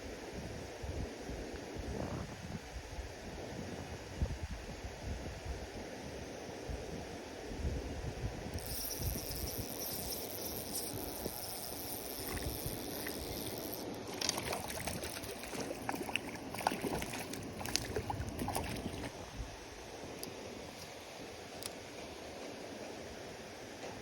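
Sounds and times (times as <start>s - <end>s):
water splashing and sloshing: 12.1s - 19.4s.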